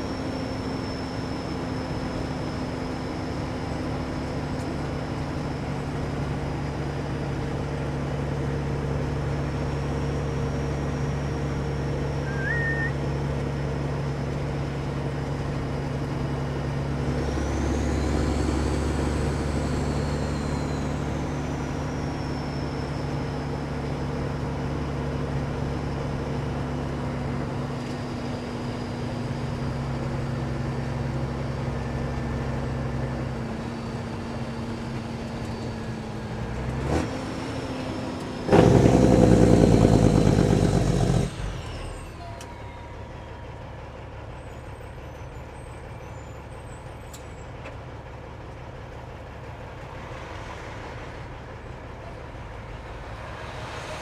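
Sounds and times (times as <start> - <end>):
truck diesel engine running: 0.0 - 54.0
loud exhaust blast: 36.4 - 42.0.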